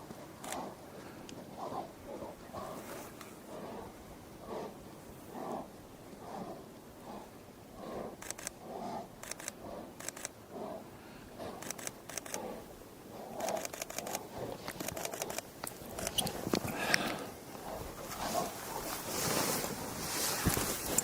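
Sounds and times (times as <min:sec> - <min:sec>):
bears growling and breathing: 0:00.1 - 0:21.0
camera shutter clicking: 0:11.6 - 0:12.4.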